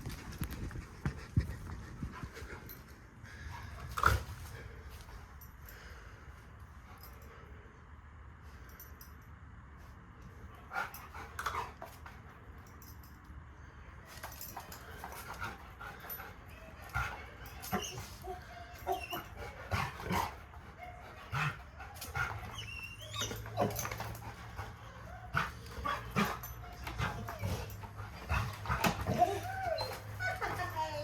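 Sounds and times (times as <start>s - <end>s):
dog whining and whimpering: 14.3s - 31.0s.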